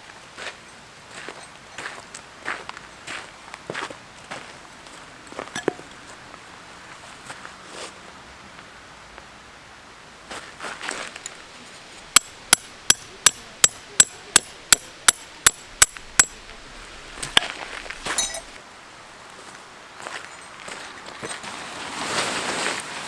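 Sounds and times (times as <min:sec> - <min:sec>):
hammer striking metal tent peg: 0:12.0 - 0:16.6, 0:17.2 - 0:18.6.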